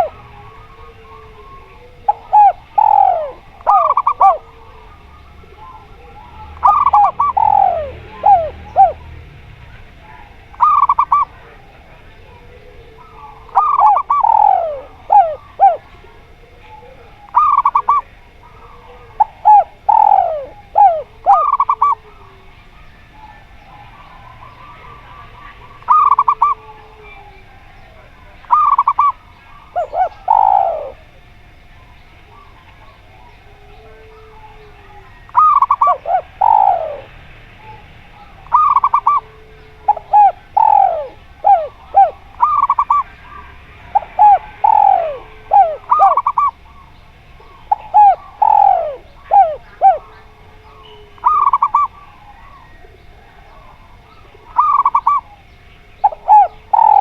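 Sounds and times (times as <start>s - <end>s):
doves cooing: 0.0s - 57.0s.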